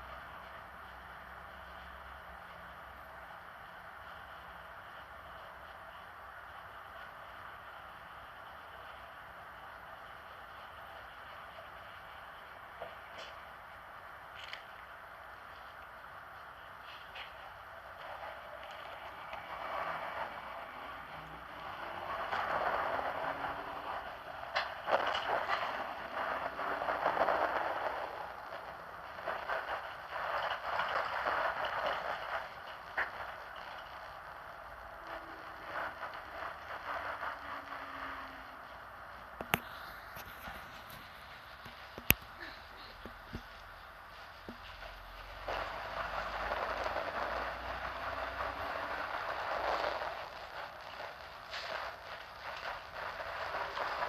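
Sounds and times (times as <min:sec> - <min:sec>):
bus engine rumble: 0:00.0 - 0:29.9, 0:34.4 - 0:46.8
road and air noise: 0:00.0 - 0:54.0.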